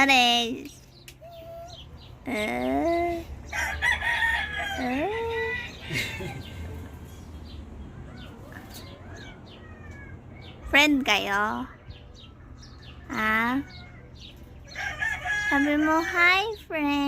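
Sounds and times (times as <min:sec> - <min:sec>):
rooster crowing: 0:03.5 - 0:06.8, 0:14.7 - 0:16.2.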